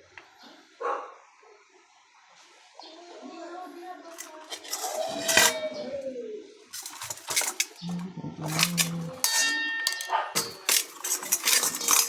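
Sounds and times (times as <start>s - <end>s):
parts and tools clattering: 4.1s - 5.9s, 6.7s - 12.0s
metallic ring: 4.2s - 5.8s, 8.5s - 12.0s.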